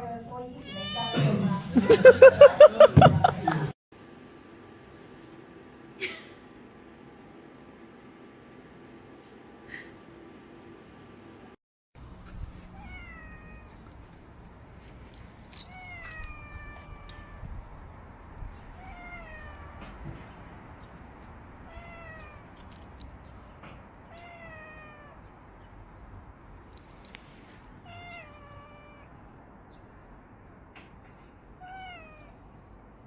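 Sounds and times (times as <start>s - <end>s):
cat meowing: 0.6s - 1.3s, 12.8s - 13.9s, 15.7s - 17.6s, 18.6s - 20.0s, 21.7s - 22.6s, 24.0s - 25.3s, 27.8s - 29.2s, 31.6s - 32.4s.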